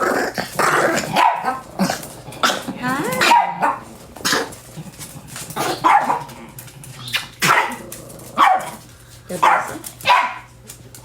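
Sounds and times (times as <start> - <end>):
dog barking: 1.1 - 1.6, 3.2 - 3.8, 5.8 - 6.3, 7.4 - 7.8, 8.4 - 8.8, 9.4 - 10.5.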